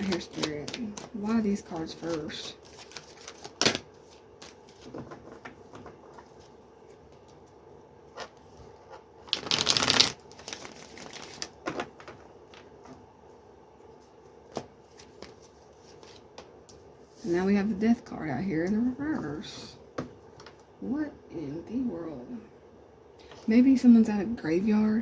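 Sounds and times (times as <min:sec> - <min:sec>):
cards being shuffled: 0:00.0 - 0:07.4, 0:08.1 - 0:12.8, 0:14.5 - 0:16.3.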